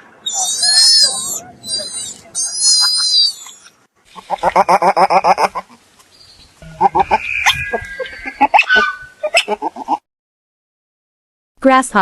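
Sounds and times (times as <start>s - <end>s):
otter chattering calls: 6.2s - 9.6s.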